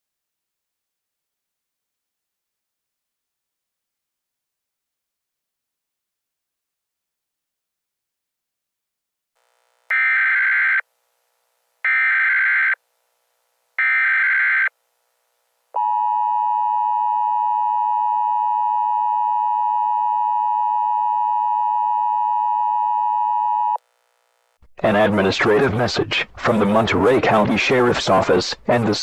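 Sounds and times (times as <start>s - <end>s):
buzzing data bursts: 9.4s - 10.8s.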